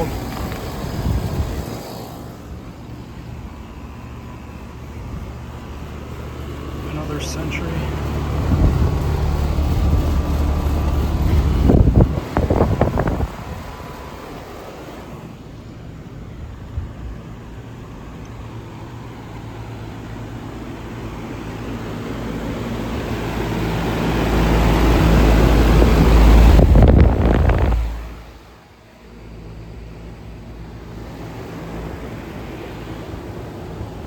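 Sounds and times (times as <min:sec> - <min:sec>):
air-conditioning condensers humming: 0:00.0 - 0:34.0
vehicle passing close by: 0:03.5 - 0:15.4, 0:18.5 - 0:28.5.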